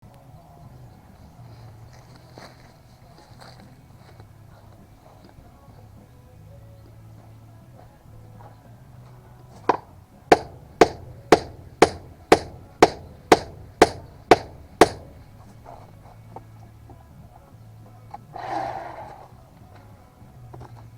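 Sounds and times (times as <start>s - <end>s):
sharp ringing strikes: 10.3s - 15.4s.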